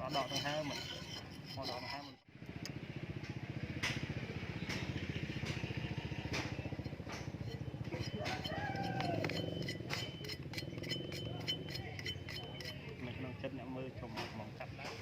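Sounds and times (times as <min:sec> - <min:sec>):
rooster crowing: 0:08.0 - 0:09.8.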